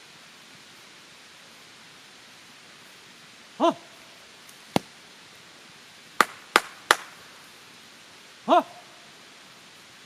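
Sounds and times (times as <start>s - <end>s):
mountain stream rushing: 0.0s - 10.0s.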